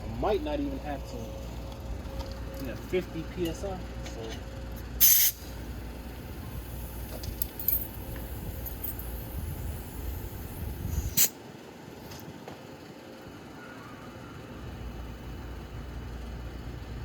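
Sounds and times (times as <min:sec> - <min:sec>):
air compressor rumble: 0:00.0 - 0:12.9
air hissing: 0:05.0 - 0:11.4.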